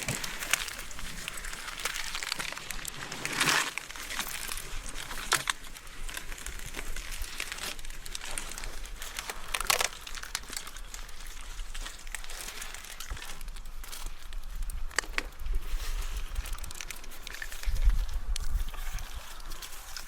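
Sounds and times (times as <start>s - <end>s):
bike tyres crunching on gravel: 0.0s - 20.0s.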